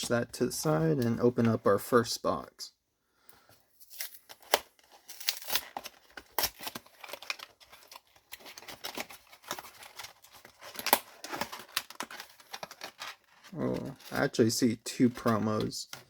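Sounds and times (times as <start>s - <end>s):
cardboard cracking: 3.9s - 14.3s
cardboard box being torn open: 4.0s - 14.2s.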